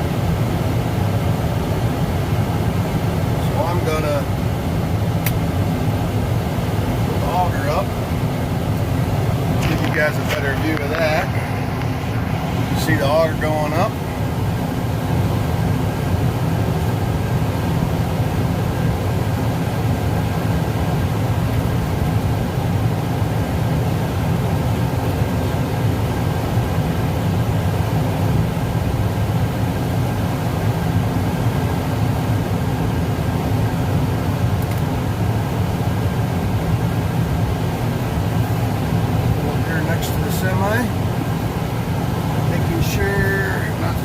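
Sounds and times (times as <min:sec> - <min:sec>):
tractor engine rumble: 0:00.4 - 0:15.4, 0:37.2 - 0:44.0.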